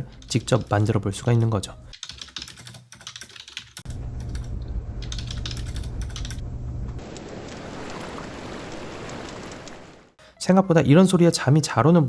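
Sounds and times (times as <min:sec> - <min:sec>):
keyboard typing clicks: 0:01.4 - 0:06.4
rain-like hiss: 0:07.0 - 0:10.2.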